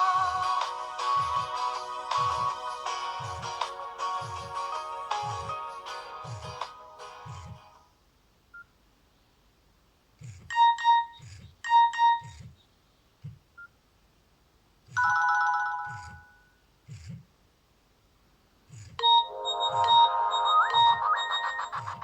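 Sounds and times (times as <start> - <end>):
phone melody: 0.2 - 3.6, 4.2 - 6.6, 15.0 - 16.4, 19.0 - 22.0
bright electronic beeps: 19.0 - 22.0
sustained chime: 19.2 - 22.0.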